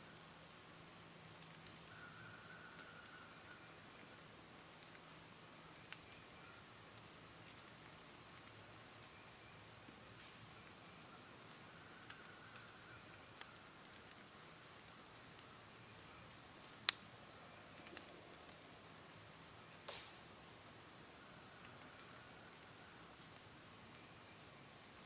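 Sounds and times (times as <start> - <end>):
crickets and insects droning: 0.0 - 25.0
faint clicks: 16.8 - 17.0, 19.8 - 20.2.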